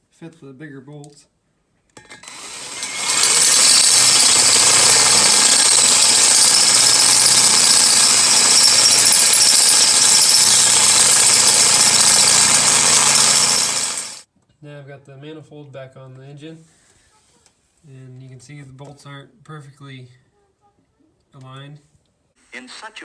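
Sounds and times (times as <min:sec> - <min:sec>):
power drill running under load: 0:02.0 - 0:14.2.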